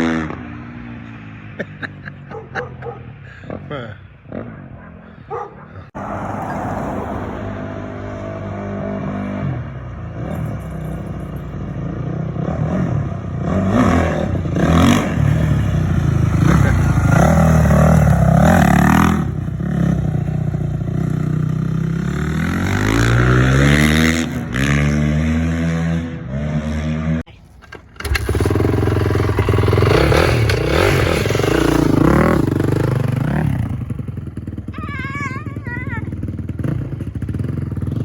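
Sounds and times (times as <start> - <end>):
dirt bike engine revving: 0.0 - 1.9, 11.8 - 38.0.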